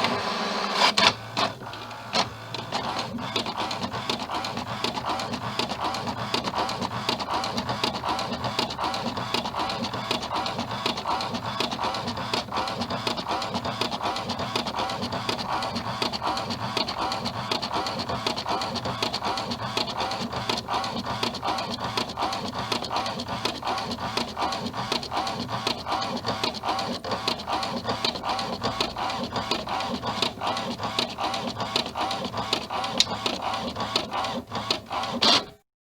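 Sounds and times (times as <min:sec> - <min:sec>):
printer clattering: 0:00.9 - 0:35.6.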